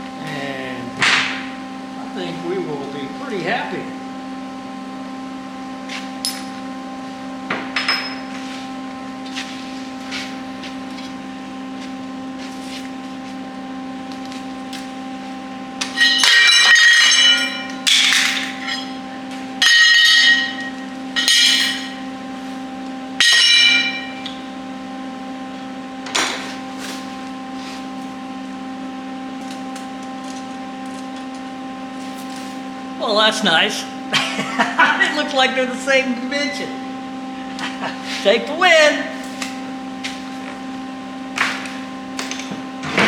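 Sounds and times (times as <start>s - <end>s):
steady hum: 0.0s - 43.0s
ringing metallic bursts: 15.9s - 19.0s, 19.6s - 22.0s, 23.2s - 24.3s.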